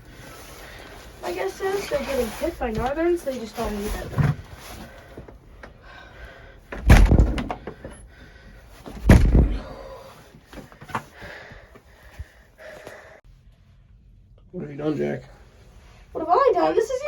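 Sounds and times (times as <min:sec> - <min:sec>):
light knocks and rustles: 0:01.3 - 0:05.8
heavy thumps: 0:06.6 - 0:12.3.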